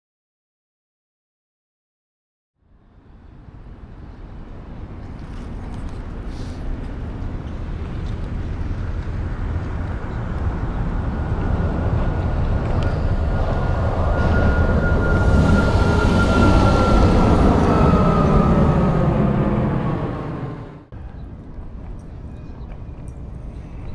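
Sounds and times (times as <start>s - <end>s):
skate wheels rolling on pavement: 4.5s - 13.6s
thin steady whine: 9.2s - 20.9s.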